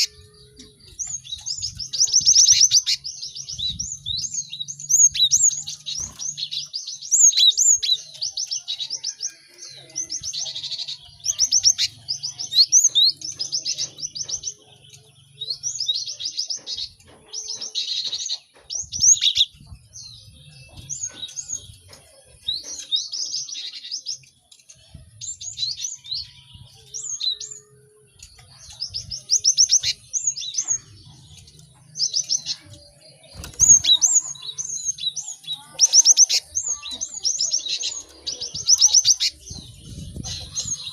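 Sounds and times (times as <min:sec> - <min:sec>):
birds chirping rapidly: 0:00.0 - 0:40.9.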